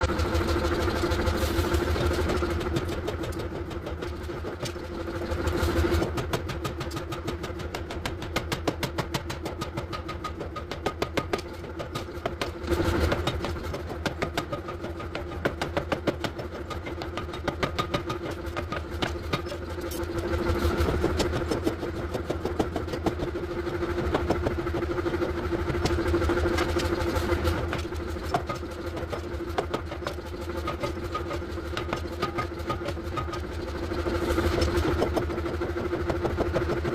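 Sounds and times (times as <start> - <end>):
machine drone: 0.0 - 8.6, 9.5 - 36.9.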